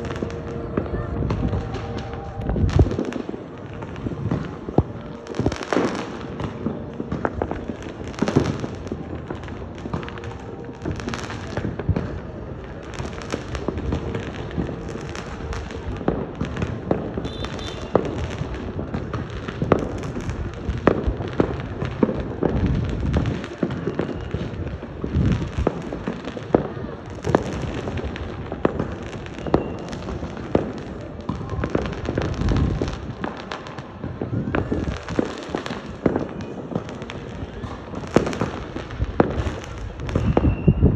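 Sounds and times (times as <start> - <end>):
fireworks booming and cracking: 0.0 - 40.9.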